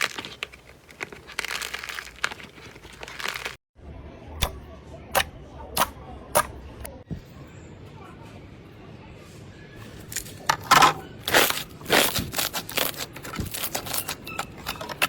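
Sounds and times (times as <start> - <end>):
crunchy slime crackling: 0.0 - 3.6, 11.1 - 15.0.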